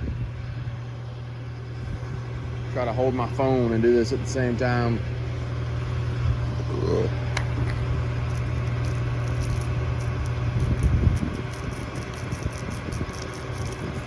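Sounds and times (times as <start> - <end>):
engine droning low: 0.0 - 14.0
spray wand hissing: 8.2 - 14.0.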